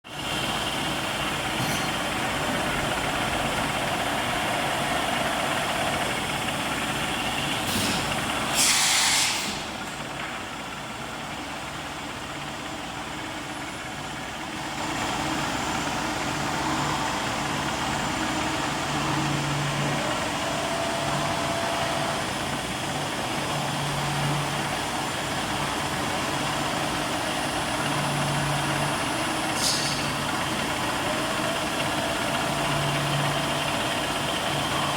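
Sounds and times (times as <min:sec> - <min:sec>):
workshop machinery running: 0:00.1 - 0:34.9
air hiss: 0:07.6 - 0:09.8.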